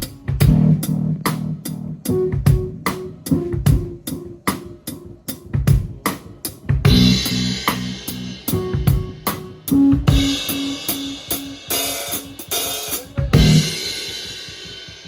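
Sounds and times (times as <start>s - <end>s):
drum kit playing: 0.0s - 15.0s
bass guitar notes: 0.4s - 4.4s, 6.9s - 11.1s, 13.4s - 13.8s.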